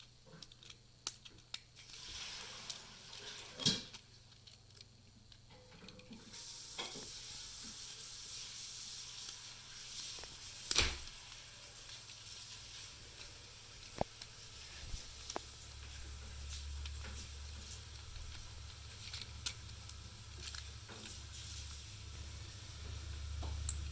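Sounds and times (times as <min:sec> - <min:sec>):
lock pick clicking and scraping: 0:00.0 - 0:01.7
steady hiss: 0:01.6 - 0:04.4, 0:06.0 - 0:23.9.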